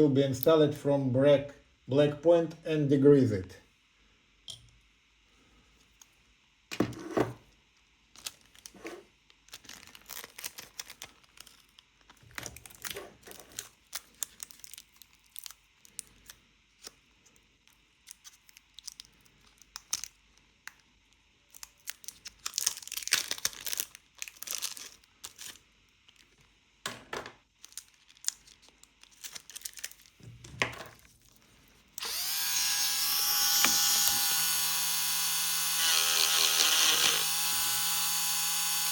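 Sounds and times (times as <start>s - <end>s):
rotary tool whining: 32.0s - 38.9s.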